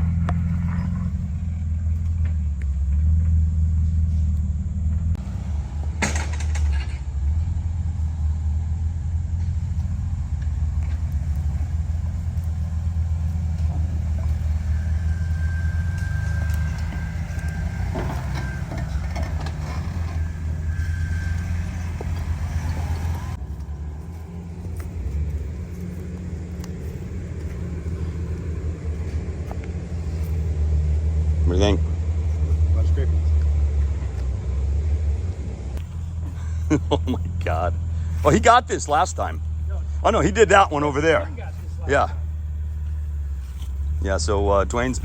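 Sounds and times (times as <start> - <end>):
engine low rumble: 0.0 - 45.0.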